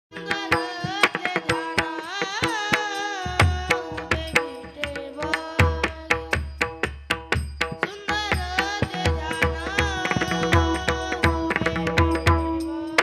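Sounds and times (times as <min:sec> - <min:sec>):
person singing devotional song: 0:00.1 - 0:06.7, 0:07.6 - 0:13.0.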